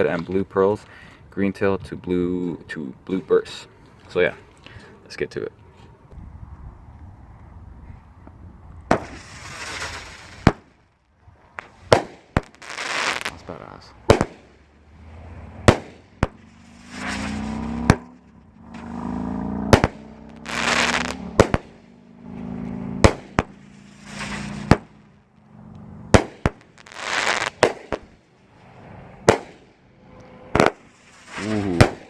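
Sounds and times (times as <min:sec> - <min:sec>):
loud firework bangs: 0:08.9 - 0:10.8, 0:11.6 - 0:14.7, 0:15.4 - 0:25.1, 0:26.1 - 0:28.2, 0:29.2 - 0:29.8, 0:30.5 - 0:32.0
crackling hissing glitter: 0:11.7 - 0:13.5, 0:16.5 - 0:17.8, 0:19.8 - 0:21.3, 0:23.6 - 0:24.8, 0:26.6 - 0:27.9, 0:30.8 - 0:31.9.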